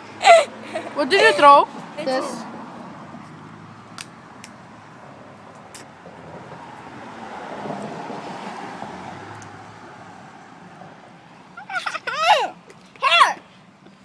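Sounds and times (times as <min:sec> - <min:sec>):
steady outdoor hum: 0:00.0 - 0:14.0
car passing by: 0:00.5 - 0:11.2.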